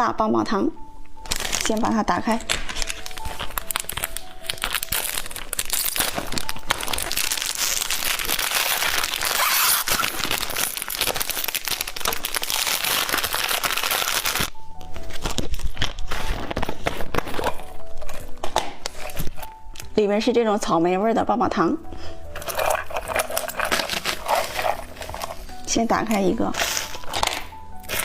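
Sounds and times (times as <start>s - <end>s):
background music: 0.0s - 28.0s
plastic candy wrapper crinkling: 1.2s - 19.9s, 22.3s - 28.0s.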